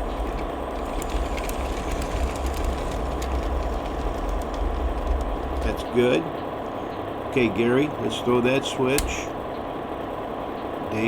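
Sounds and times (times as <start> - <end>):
toy train motor running: 0.0 - 6.0
wheels clicking on rails: 0.0 - 6.6.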